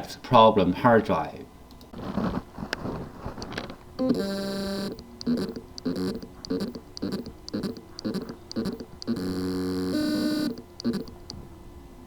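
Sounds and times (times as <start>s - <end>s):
hard drive motor whining pulses: 4.0s - 11.4s
hard drive steady tone: 4.0s - 11.4s.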